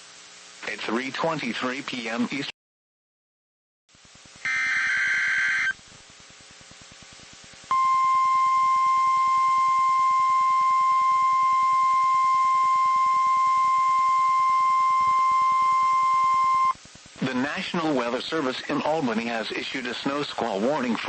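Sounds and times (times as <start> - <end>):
warbling data tones: 4.4 - 5.8
steady warning alarm tone: 4.5 - 5.8, 7.7 - 16.8
faint hiss: 16.7 - 21.0.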